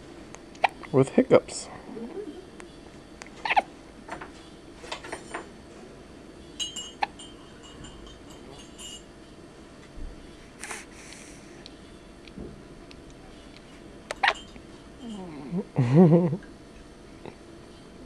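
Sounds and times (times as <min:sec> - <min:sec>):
baby hiccuping: 0:00.6 - 0:00.8, 0:03.4 - 0:03.7, 0:14.2 - 0:14.4
light ringing clinks: 0:06.6 - 0:09.2, 0:14.2 - 0:15.3.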